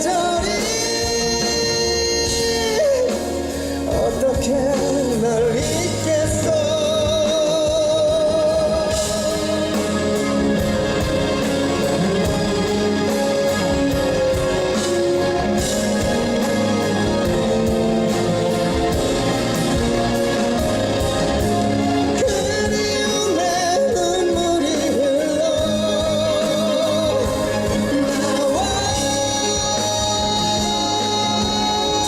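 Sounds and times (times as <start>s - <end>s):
drum beat with cymbals: 0.0s - 32.0s
sustained guitar chords: 8.6s - 23.1s.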